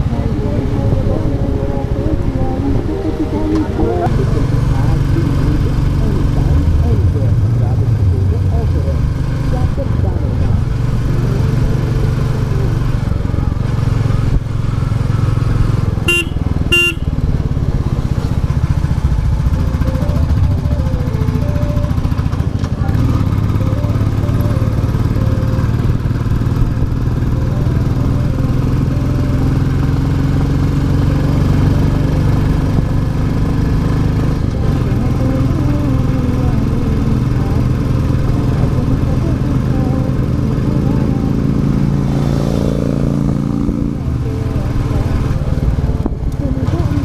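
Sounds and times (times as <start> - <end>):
motorcycle engine running: 0.0 - 47.0
horn beeps: 16.0 - 17.2.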